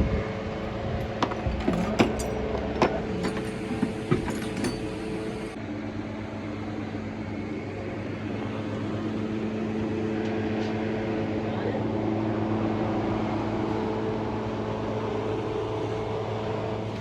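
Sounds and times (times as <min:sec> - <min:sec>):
machine humming: 0:00.0 - 0:05.6
sharp metallic clinks: 0:01.0 - 0:05.6.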